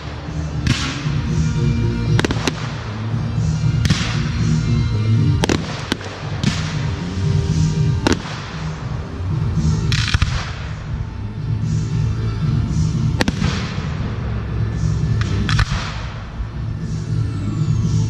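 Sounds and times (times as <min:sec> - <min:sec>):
firework crackling: 0:00.0 - 0:11.2, 0:12.8 - 0:17.1
music: 0:00.0 - 0:18.0
firework shells banging: 0:02.1 - 0:03.1, 0:05.4 - 0:07.2, 0:07.9 - 0:09.2.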